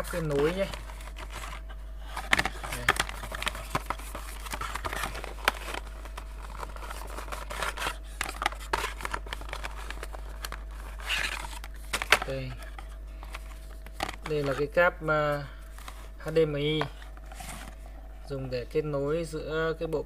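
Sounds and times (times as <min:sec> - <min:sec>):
plastic packaging crinkling: 0:00.0 - 0:14.7.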